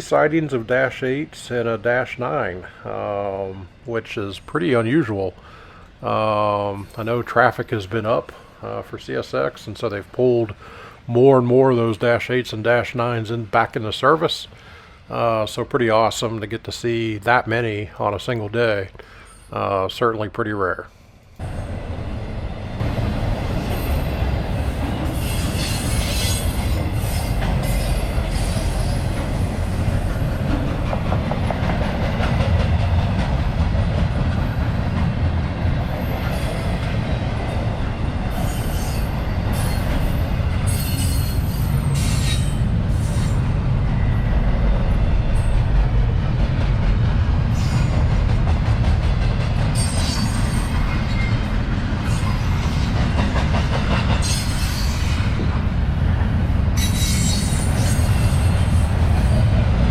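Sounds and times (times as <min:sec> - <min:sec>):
freight train rumbling past: 0:00.0 - 0:59.9
high wheel squeals: 0:25.2 - 0:29.1, 0:38.3 - 0:43.4, 0:49.8 - 0:51.4, 0:56.8 - 0:58.6.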